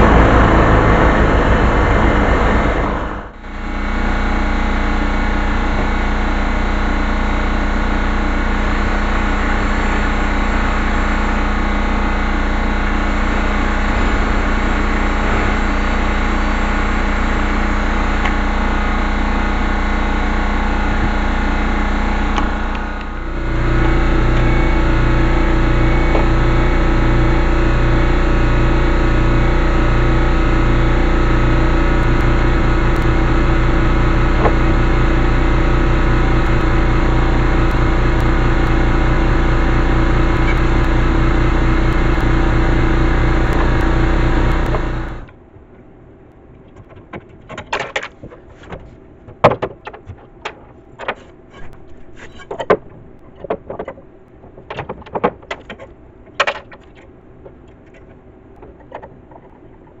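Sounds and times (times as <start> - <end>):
loud steady held tones: 0.0 - 45.4.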